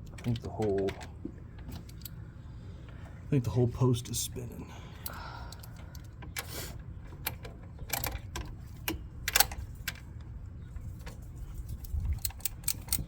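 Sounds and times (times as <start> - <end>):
wrench clicking on metal nut: 12.2 - 13.0.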